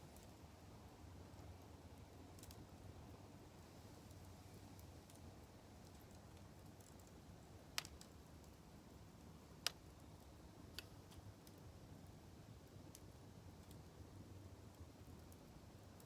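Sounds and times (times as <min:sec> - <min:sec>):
wood fire crackling: 0:00.0 - 0:16.0.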